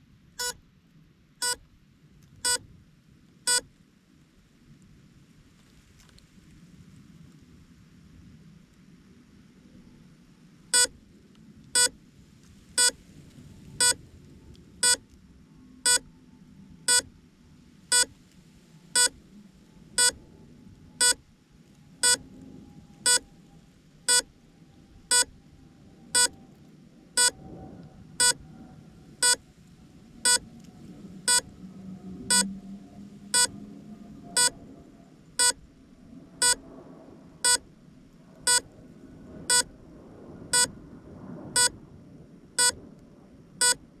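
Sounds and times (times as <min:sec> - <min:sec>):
short sharp drone beeps: 0:00.4 - 0:00.6, 0:01.4 - 0:01.6, 0:03.5 - 0:03.7, 0:13.8 - 0:14.0, 0:14.8 - 0:15.0, 0:15.9 - 0:16.1, 0:16.9 - 0:17.1, 0:17.9 - 0:18.1, 0:19.0 - 0:19.2, 0:20.0 - 0:20.2, 0:21.0 - 0:21.2, 0:22.0 - 0:22.2, 0:23.0 - 0:23.3, 0:24.1 - 0:24.3, 0:25.1 - 0:25.3, 0:26.2 - 0:26.4, 0:27.2 - 0:27.4, 0:28.2 - 0:28.4, 0:31.3 - 0:31.5, 0:32.3 - 0:32.5, 0:33.4 - 0:33.6, 0:34.3 - 0:34.6, 0:35.4 - 0:35.6, 0:37.4 - 0:37.7, 0:38.5 - 0:38.7, 0:39.5 - 0:39.7, 0:41.6 - 0:41.8, 0:42.6 - 0:42.8, 0:43.6 - 0:43.8.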